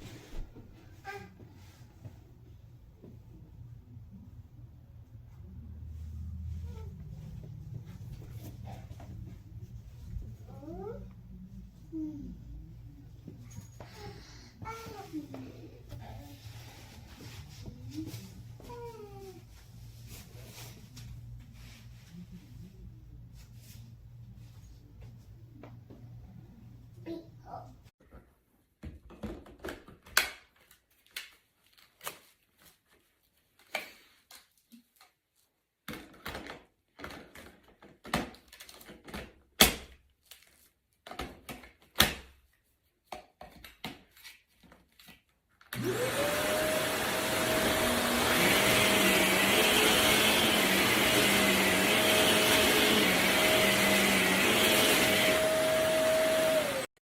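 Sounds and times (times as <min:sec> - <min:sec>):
vacuum cleaner motor whining: 0:45.8 - 0:56.9.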